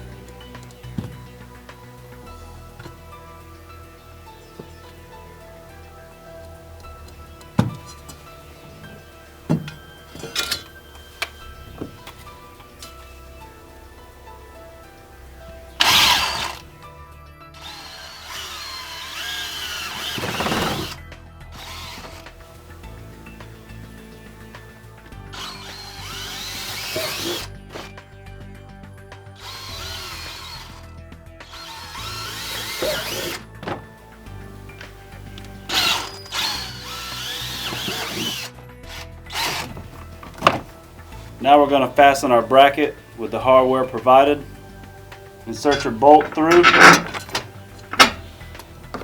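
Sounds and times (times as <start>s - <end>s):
background music: 0.0s - 49.0s
cordless drill drilling: 12.0s - 16.8s, 17.6s - 28.0s, 29.4s - 41.4s, 44.6s - 49.0s.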